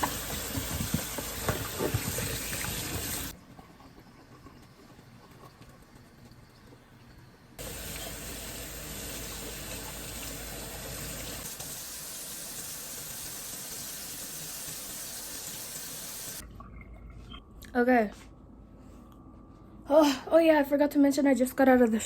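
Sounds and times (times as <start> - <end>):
tap running into sink: 0.0 - 3.3.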